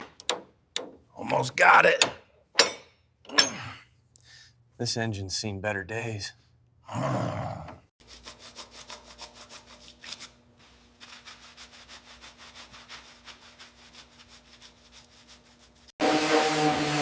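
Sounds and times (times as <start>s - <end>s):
hand sanding strokes: 8.0s - 17.0s.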